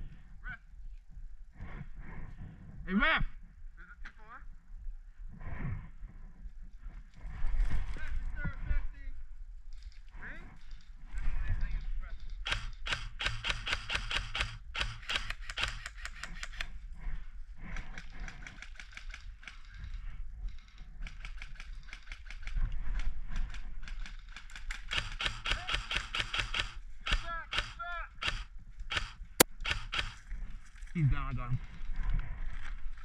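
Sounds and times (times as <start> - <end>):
airsoft guns firing: 12.5 - 16.2, 24.9 - 30.2.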